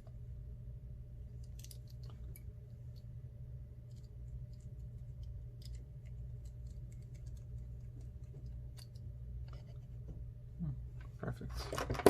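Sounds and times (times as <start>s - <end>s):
steady low hum: 0.0s - 12.0s
small clicks of tools and parts: 1.4s - 3.1s, 3.8s - 7.4s.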